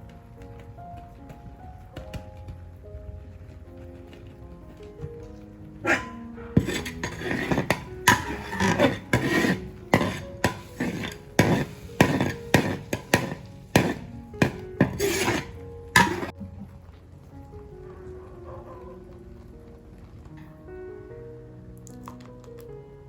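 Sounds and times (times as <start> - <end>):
soft background music: 0.0 - 23.0
loud rasping scraping strokes: 5.9 - 16.3.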